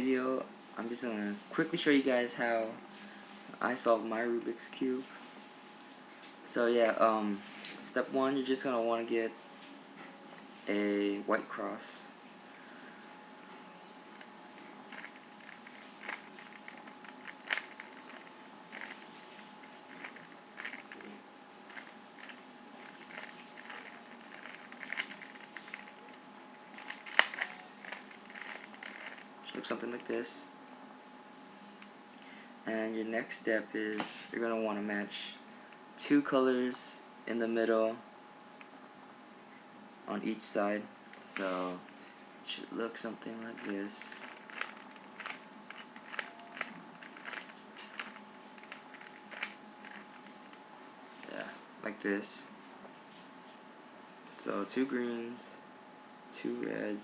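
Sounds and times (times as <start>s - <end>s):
plastic cube clacking: 14.9s - 19.0s, 19.9s - 21.1s, 21.7s - 26.1s, 26.8s - 29.2s, 43.6s - 50.3s.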